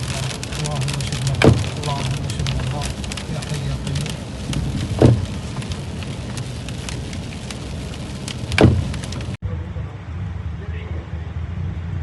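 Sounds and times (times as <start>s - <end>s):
rain ticking on a car: 0.0s - 9.4s
engine and road rumble: 0.0s - 12.0s
loud knocks: 1.4s - 1.8s, 4.9s - 5.4s, 8.5s - 9.1s.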